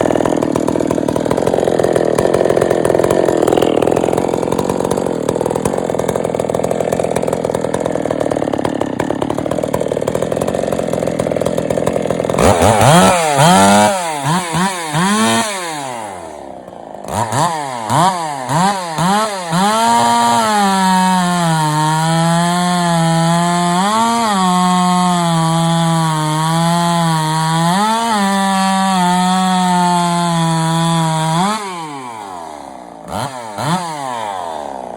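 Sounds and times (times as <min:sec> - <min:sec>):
chainsaw revving: 0:00.0 - 0:34.9.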